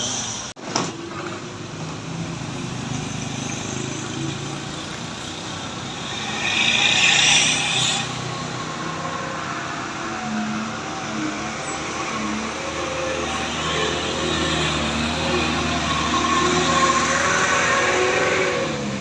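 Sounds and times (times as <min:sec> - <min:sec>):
road traffic: 0:00.0 - 0:19.0
loud hiss: 0:05.5 - 0:08.3.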